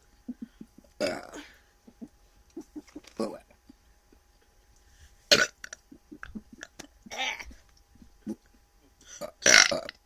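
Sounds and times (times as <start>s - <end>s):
person belching: 1.0s - 1.5s, 3.0s - 3.5s, 5.3s - 7.5s, 9.2s - 10.0s.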